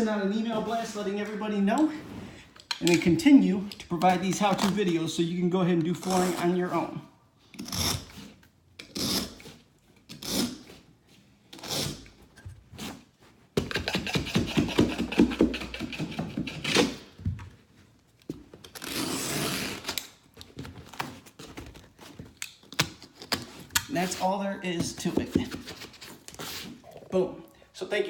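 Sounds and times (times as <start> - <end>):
carpet tool scraping: 11.5 - 17.2, 18.7 - 26.9.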